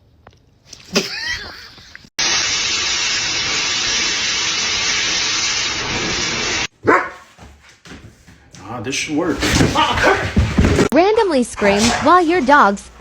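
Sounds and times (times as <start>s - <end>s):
loud even hiss: 2.2s - 6.7s.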